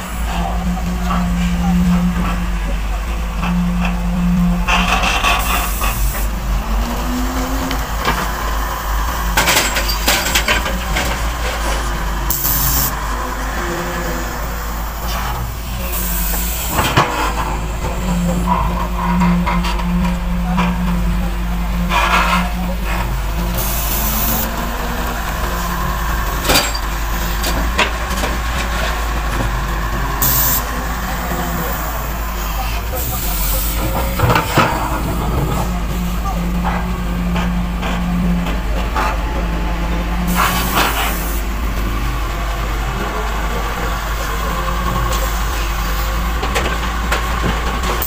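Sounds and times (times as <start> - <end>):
excavator diesel engine running: 0.0 - 48.0
knocks and rattles: 2.0 - 13.2, 33.8 - 45.2
hiss of air: 30.1 - 30.7, 40.3 - 41.5.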